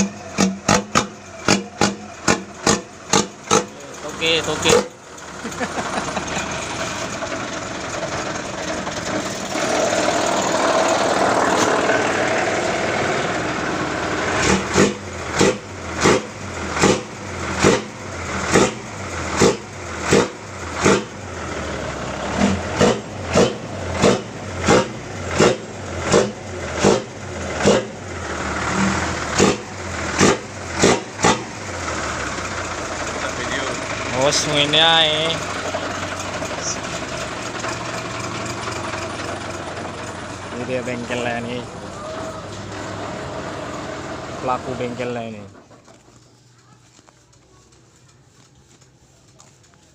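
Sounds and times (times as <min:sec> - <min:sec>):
diesel truck engine revving: 0:00.0 - 0:46.0
sharp exhaust bark: 0:18.5 - 0:21.2, 0:22.3 - 0:28.0, 0:29.4 - 0:31.5.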